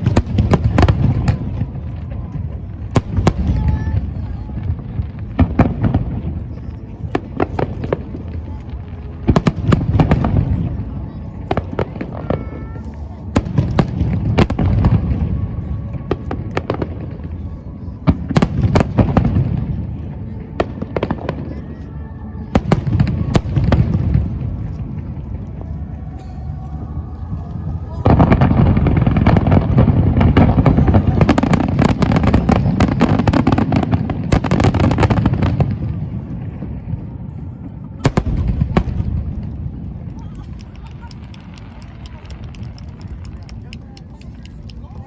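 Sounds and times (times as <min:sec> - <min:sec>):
fireworks bangs and pops: 0:00.0 - 0:10.8, 0:28.0 - 0:36.9, 0:38.0 - 0:45.0
continuous low rumble: 0:00.0 - 0:45.0.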